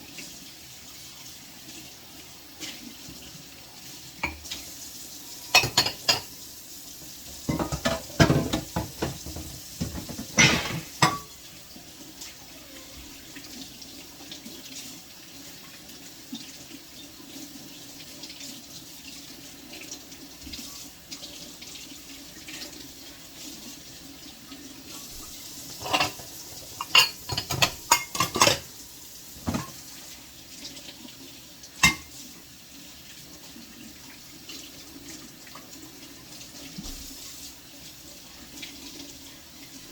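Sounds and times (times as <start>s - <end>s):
tap water running into sink: 0.0s - 39.9s
crockery and cutlery clinking: 5.5s - 6.3s, 7.3s - 11.4s, 25.7s - 28.7s, 29.4s - 29.8s, 31.8s - 32.1s.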